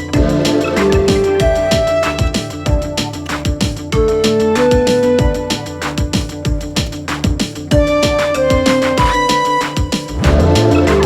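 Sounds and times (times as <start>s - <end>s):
held synth notes: 0.0s - 7.1s, 7.7s - 11.0s
kick-drum beat: 0.0s - 11.0s.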